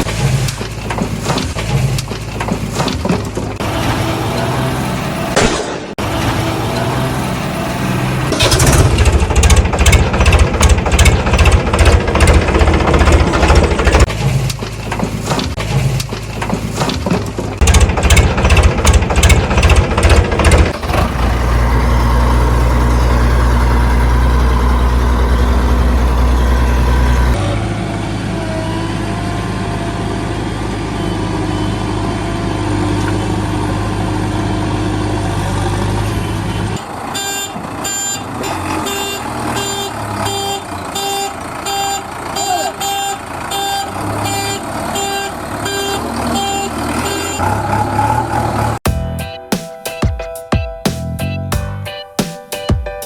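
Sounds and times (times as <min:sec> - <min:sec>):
truck engine running: 0:00.0 - 0:49.3
rapid engine knocking: 0:08.4 - 0:14.1, 0:17.5 - 0:26.2
reversing alarm beeping: 0:36.4 - 0:47.5.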